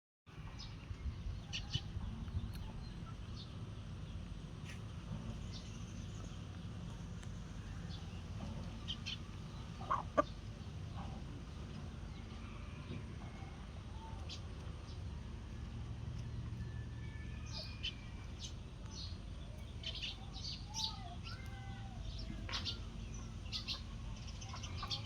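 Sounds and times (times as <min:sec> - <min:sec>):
bird chirps and calls: 0:17.4 - 0:25.0.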